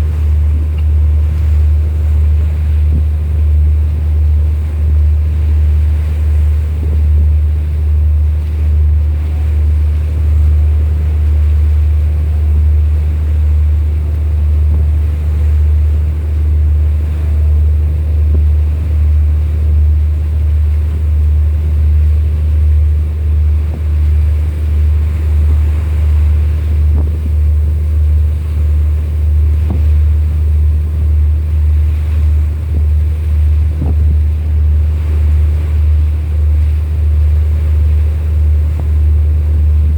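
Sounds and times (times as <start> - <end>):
boat engine drone: 0.0 - 39.9
wind noise: 26.5 - 28.6, 31.8 - 35.2, 38.6 - 39.9.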